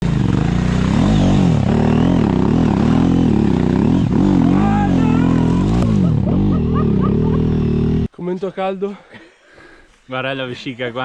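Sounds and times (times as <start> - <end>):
motorcycle engine revving: 0.0 - 8.1.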